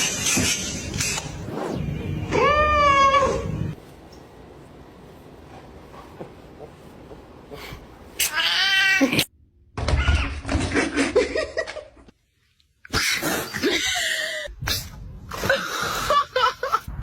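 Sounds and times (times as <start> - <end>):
cat yowling and meowing: 2.3 - 3.5.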